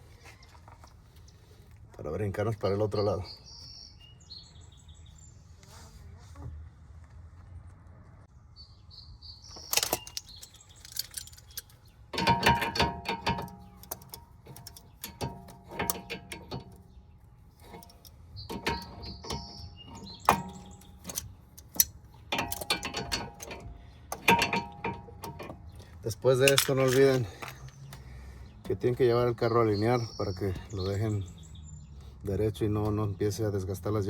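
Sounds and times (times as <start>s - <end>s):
bird chirping: 2.2s - 5.6s, 8.3s - 34.0s
hand tools and metal parts clinking: 9.5s - 31.6s.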